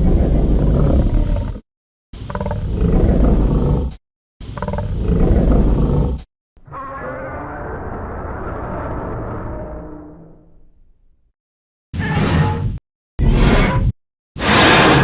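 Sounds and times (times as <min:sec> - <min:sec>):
monster roar sound effect: 0:04.6 - 0:10.2.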